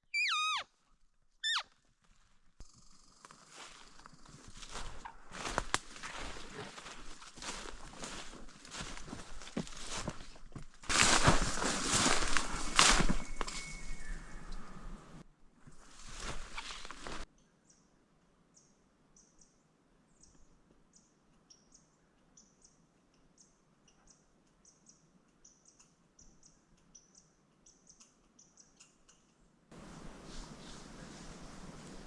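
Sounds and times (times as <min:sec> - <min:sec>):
small bird chirping: 0:00.0 - 0:00.7, 0:01.4 - 0:01.7, 0:13.0 - 0:15.2, 0:29.8 - 0:32.0
loud rustling noise: 0:10.9 - 0:15.2, 0:29.7 - 0:32.0.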